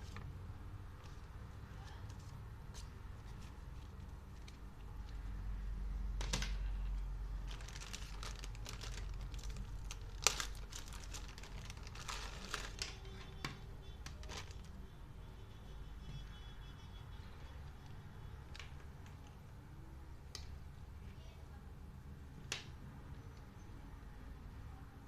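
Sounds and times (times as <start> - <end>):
packaging crinkling and rustling: 6.2 - 14.8.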